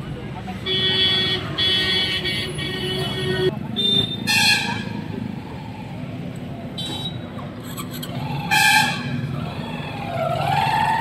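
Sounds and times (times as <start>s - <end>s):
traffic engines rumbling: 0.0s - 11.0s
vehicle horn honking: 0.6s - 5.0s.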